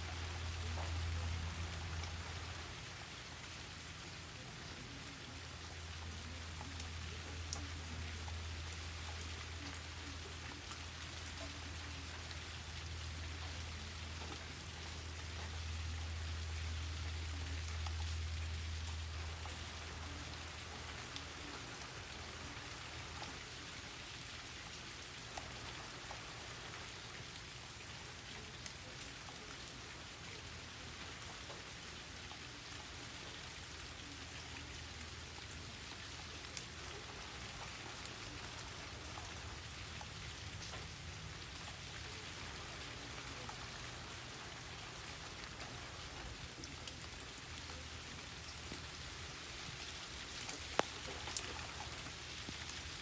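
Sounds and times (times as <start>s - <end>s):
steady rain: 0.0s - 53.0s.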